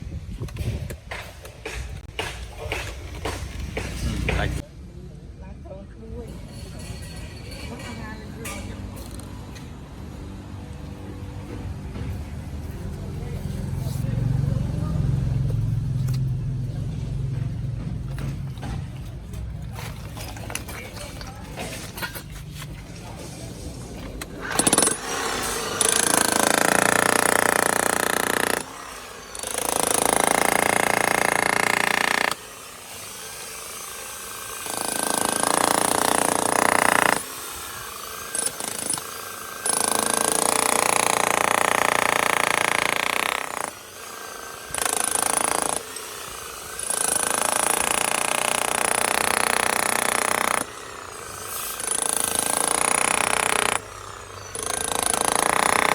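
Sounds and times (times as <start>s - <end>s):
electric demolition hammer running: 24.0s - 55.9s.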